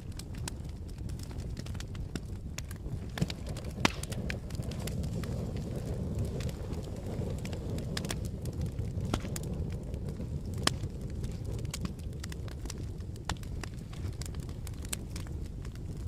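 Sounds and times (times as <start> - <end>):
flames roaring: 0.0 - 16.0
wood crackling and popping: 0.0 - 16.0.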